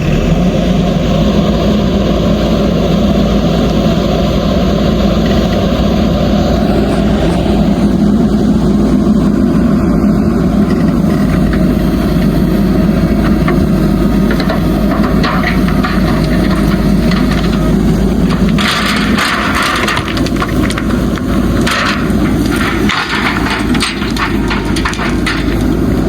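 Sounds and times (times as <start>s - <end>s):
heavy diesel engine running: 0.0s - 26.0s
gravel clattering and scraping: 9.7s - 26.0s.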